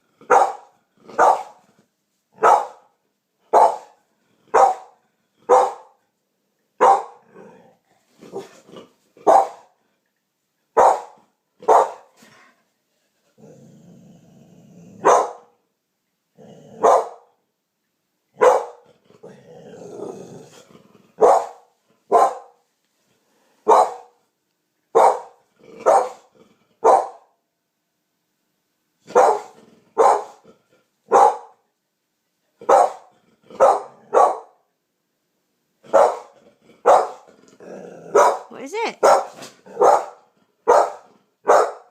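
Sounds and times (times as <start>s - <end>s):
dog barking sharply: 0.3s - 1.6s, 2.4s - 2.9s, 3.5s - 3.9s, 4.5s - 6.0s, 6.8s - 7.2s, 9.2s - 9.7s, 10.8s - 12.1s, 15.0s - 15.5s, 16.8s - 17.2s, 18.4s - 18.8s, 21.2s - 22.6s, 23.6s - 24.2s, 25.0s - 26.2s, 26.8s - 27.2s, 29.1s - 30.4s, 31.1s - 31.6s, 32.6s - 34.6s, 35.9s - 36.3s, 36.9s - 37.2s, 38.2s - 41.9s
dog growling low: 7.2s - 9.2s, 13.2s - 15.0s, 16.3s - 16.8s, 18.9s - 21.2s, 25.4s - 26.8s, 29.5s - 31.0s, 36.3s - 38.2s.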